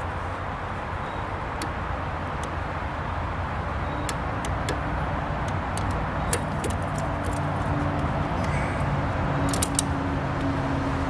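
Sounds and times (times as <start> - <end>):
ratchet strap clicking: 4.0 - 8.0, 9.4 - 10.0.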